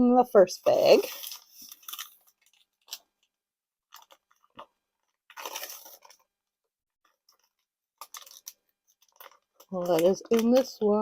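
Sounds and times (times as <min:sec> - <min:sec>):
plastic bag crinkling: 0:00.9 - 0:03.3, 0:03.9 - 0:06.3, 0:07.1 - 0:11.0.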